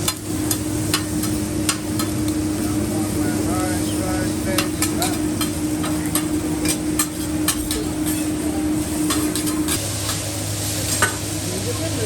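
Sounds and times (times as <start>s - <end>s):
metal spatulas clanking on griddle: 0.0s - 2.4s, 4.5s - 8.4s, 9.0s - 10.3s, 10.9s - 11.3s
food sizzling: 0.0s - 12.0s
steady hum: 0.0s - 12.0s.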